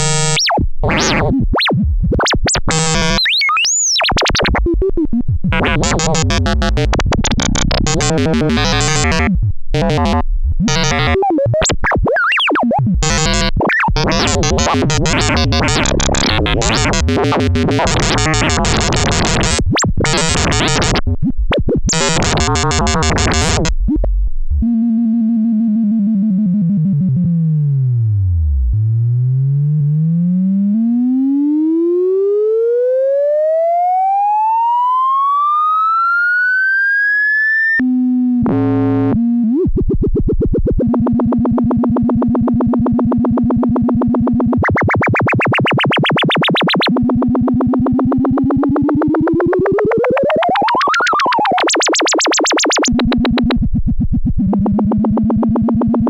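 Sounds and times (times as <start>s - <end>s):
rapid pulsing synthesizer buzz: 0.0s - 21.0s, 21.9s - 23.7s, 38.5s - 56.0s
synthesizer tone gliding to whistle: 44.6s - 52.9s.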